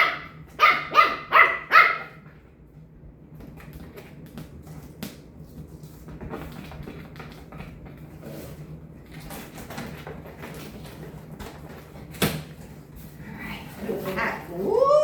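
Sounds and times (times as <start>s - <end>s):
dog barking: 0.0s - 2.2s.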